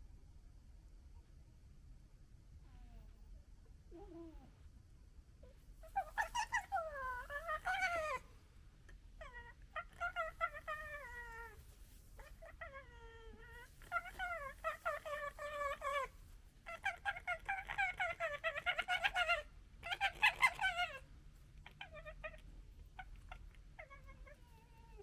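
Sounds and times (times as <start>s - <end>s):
animal calling: 5.8s - 8.3s.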